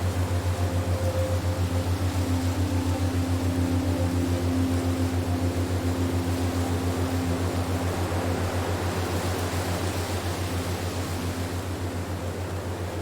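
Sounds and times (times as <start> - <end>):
high held tone: 0.0 - 8.6
pulsing low hum: 0.0 - 13.0.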